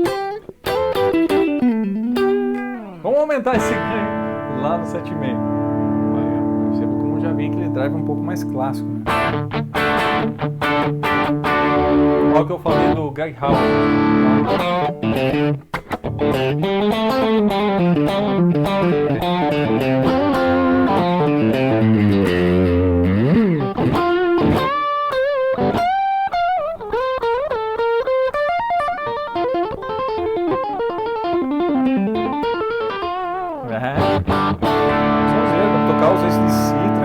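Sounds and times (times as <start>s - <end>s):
overdriven electric guitar lead: 0.0s - 37.0s.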